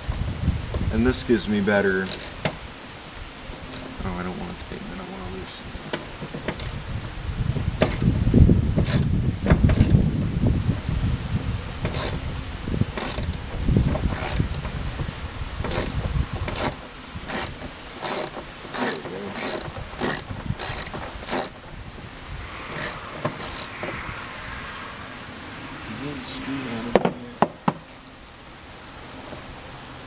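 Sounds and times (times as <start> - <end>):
socket ratchet clicking: 2.0 - 2.4, 3.7 - 3.9, 6.6 - 6.8, 7.8 - 8.1, 8.8 - 9.1, 9.7 - 10.0, 11.9 - 12.2, 13.0 - 13.4, 14.1 - 14.7, 15.7 - 21.6, 22.7 - 23.8.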